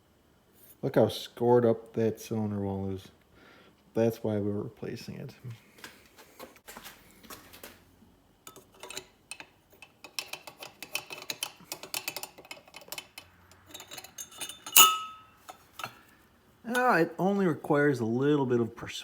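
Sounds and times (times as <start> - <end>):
light clicks and taps on metal parts: 8.4 - 16.0
sharp metallic clink: 13.6 - 16.1.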